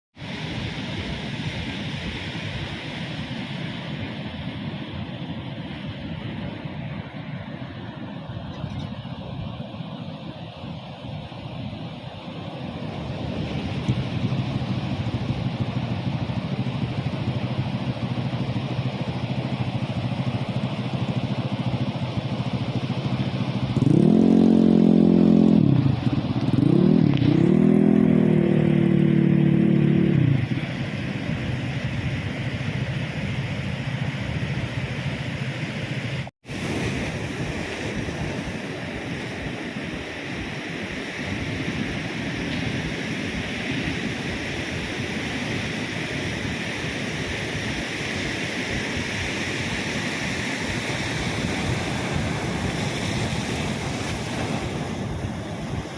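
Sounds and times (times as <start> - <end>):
wind rushing while riding: 0.2 - 55.9
motorcycle engine revving: 20.0 - 32.4.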